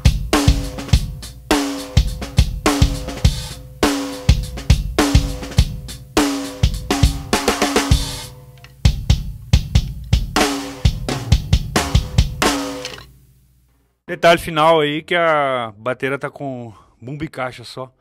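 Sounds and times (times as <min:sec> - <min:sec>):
bass drum thumps: 0:00.0 - 0:08.3, 0:08.9 - 0:12.8
drum kit groove: 0:00.0 - 0:13.2.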